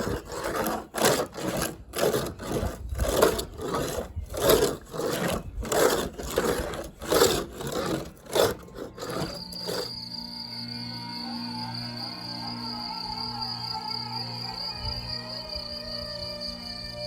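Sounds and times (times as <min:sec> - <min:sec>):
hand scraping wood: 0:00.0 - 0:10.0
music with high tone: 0:09.4 - 0:17.0.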